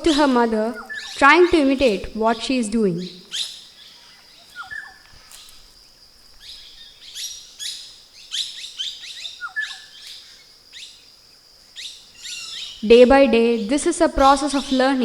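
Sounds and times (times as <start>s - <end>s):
low two-part bird call: 0.0s - 5.2s
wild birds chirping: 0.0s - 15.0s.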